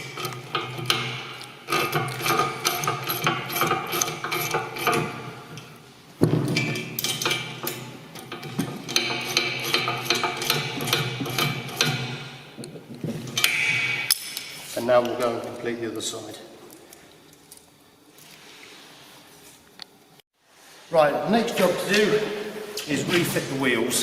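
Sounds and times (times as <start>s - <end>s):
metal spanner clinks: 6.6s - 12.0s.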